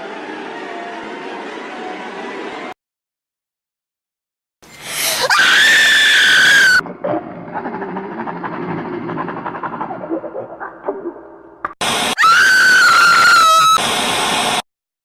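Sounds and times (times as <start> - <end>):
high-pitched scream: 4.8 - 6.8, 12.1 - 13.8.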